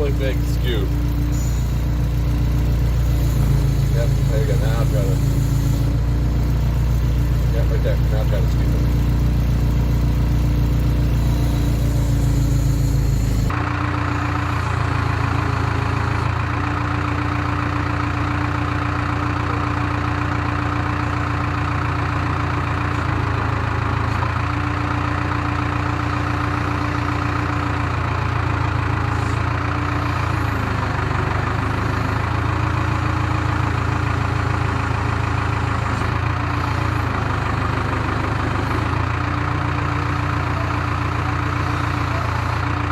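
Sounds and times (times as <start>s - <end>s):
higher mechanical tone: 0.0s - 13.6s
diesel engine idling: 0.0s - 42.9s.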